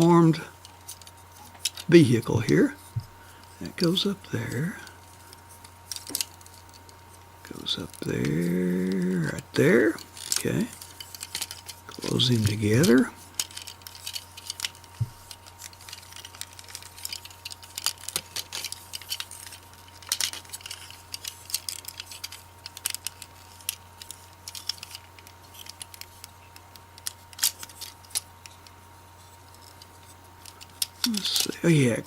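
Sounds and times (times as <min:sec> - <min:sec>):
low electrical hum: 0:00.0 - 0:32.0
plastic toy parts clicking: 0:08.0 - 0:26.3, 0:27.0 - 0:28.6.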